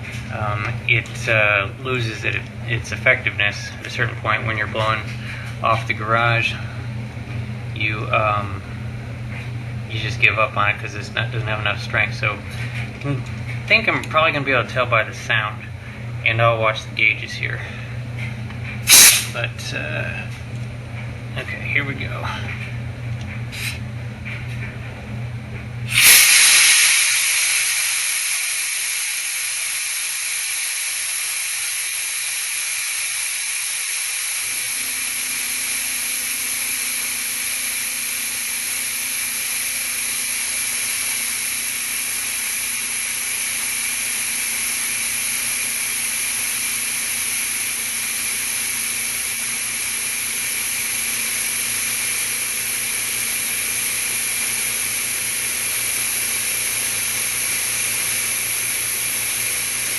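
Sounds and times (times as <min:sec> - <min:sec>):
air compressor motor hum: 0:00.0 - 0:59.9
compressed air hissing from blowgun: 0:18.9 - 0:19.4, 0:25.9 - 0:59.9.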